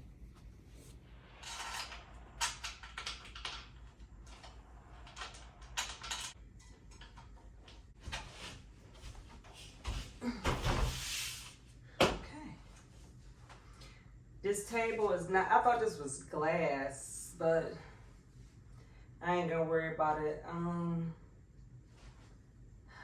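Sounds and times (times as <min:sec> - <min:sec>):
knocks clicks and scrapes of parts: 0:01.3 - 0:08.5.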